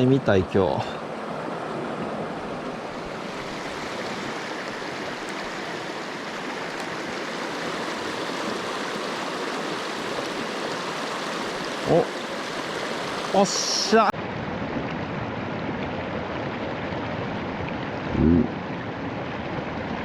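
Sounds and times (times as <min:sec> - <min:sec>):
stream rushing over rocks: 0:00.7 - 0:14.2.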